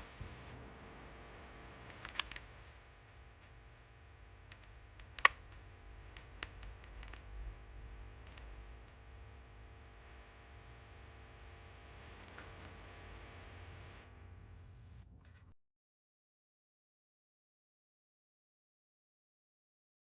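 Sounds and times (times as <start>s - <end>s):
faint low hum: 0.0s - 15.6s.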